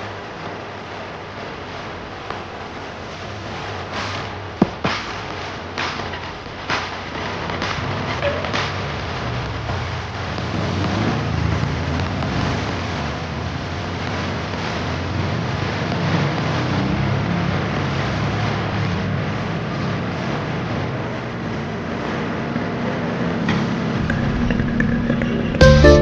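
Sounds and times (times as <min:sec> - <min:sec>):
road and traffic noise: 0:00.0 - 0:26.0
bus engine rumbling: 0:16.4 - 0:26.0.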